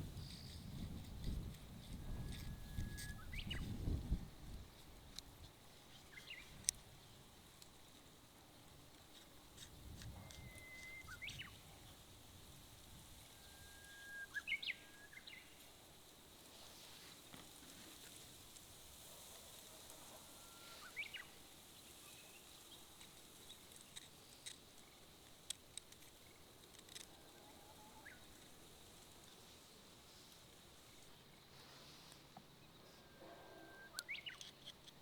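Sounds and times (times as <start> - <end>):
faint clicks: 23.0 - 29.4.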